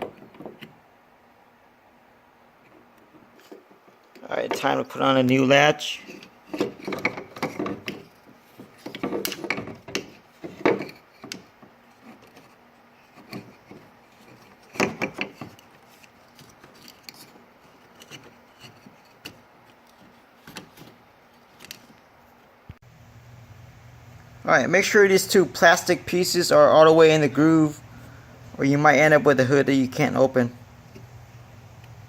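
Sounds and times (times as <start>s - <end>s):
latch parts clicking and knocking: 0.0s - 0.8s, 6.2s - 12.4s, 13.2s - 15.7s.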